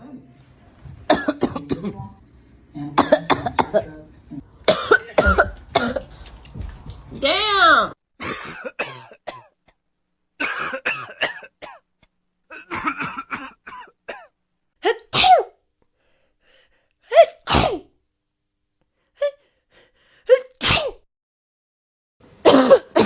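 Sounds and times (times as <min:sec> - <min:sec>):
person coughing: 0:01.1 - 0:02.1, 0:03.0 - 0:04.0, 0:04.7 - 0:06.2, 0:08.2 - 0:09.6, 0:10.4 - 0:11.8, 0:12.5 - 0:15.5, 0:17.1 - 0:17.8, 0:20.3 - 0:21.0, 0:22.4 - 0:23.0.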